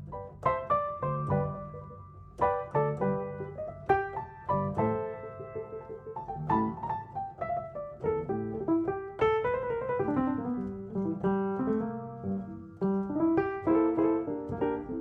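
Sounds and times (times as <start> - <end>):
gentle piano melody: 0.0 - 15.0.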